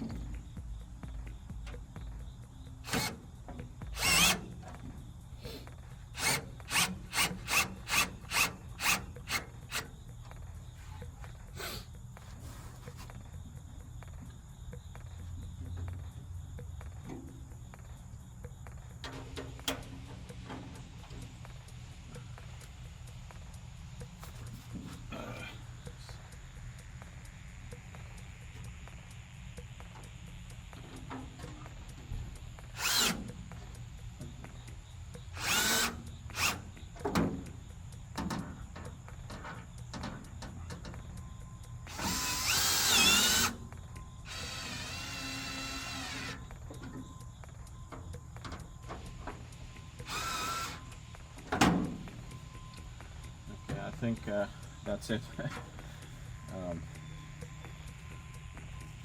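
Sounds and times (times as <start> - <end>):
power drill driving fasteners: 2.8 - 10.0, 19.0 - 21.7, 29.8 - 41.1, 41.8 - 47.0, 48.4 - 52.9
metal tool chest clicks and taps: 51.4 - 52.3.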